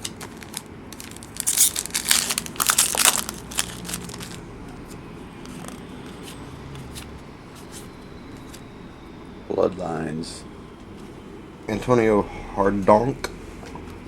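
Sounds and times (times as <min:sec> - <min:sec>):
foil wrapper crinkling: 0:00.0 - 0:06.4.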